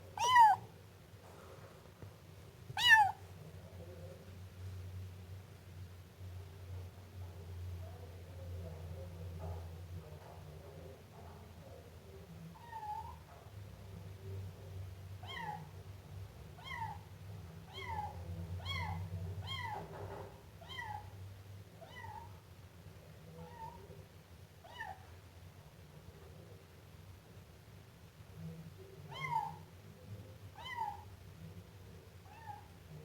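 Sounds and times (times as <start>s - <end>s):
kitten meowing: 0.2s - 0.6s, 2.7s - 3.2s.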